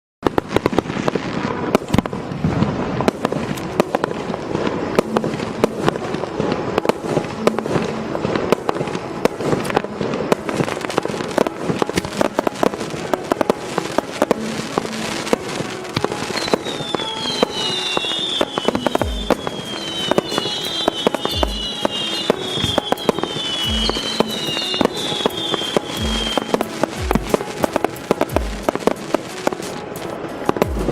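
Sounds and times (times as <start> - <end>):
firework crackling and bangs: 0.2 - 30.9
falling firework whistles: 16.4 - 26.7.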